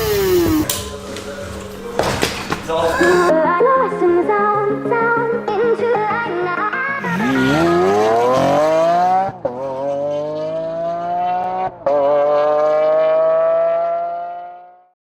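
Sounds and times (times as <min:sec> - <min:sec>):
motorcycle engine revving: 0:00.0 - 0:00.9, 0:07.0 - 0:14.8
music: 0:00.0 - 0:08.5.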